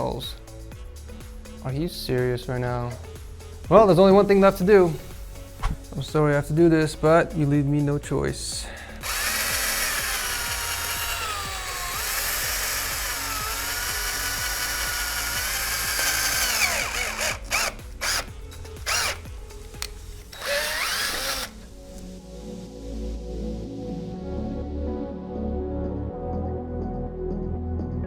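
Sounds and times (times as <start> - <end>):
power drill drilling metal: 9.0 - 19.2, 20.3 - 21.7.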